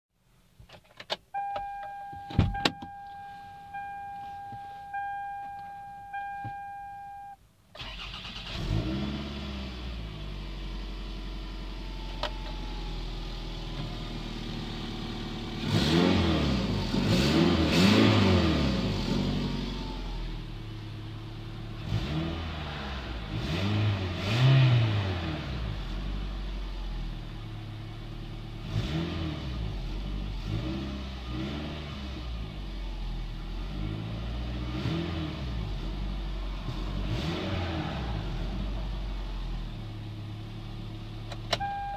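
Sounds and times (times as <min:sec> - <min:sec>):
car engine starting and idling: 0:00.3 - 0:41.9
car chime: 0:01.4 - 0:07.4, 0:41.5 - 0:41.9.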